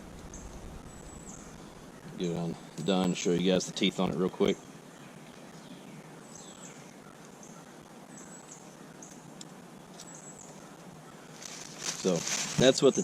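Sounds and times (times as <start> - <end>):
high wildlife chirps: 0.0 - 9.3, 9.9 - 13.0.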